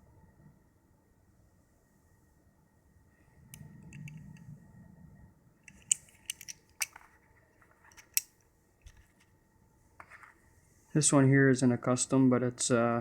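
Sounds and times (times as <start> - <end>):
butterfly knife metallic clicks: 5.7 - 7.0.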